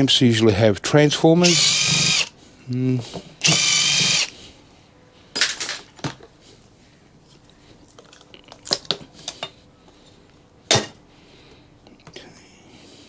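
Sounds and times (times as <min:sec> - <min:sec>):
metal parts clinking: 0:05.4 - 0:06.2.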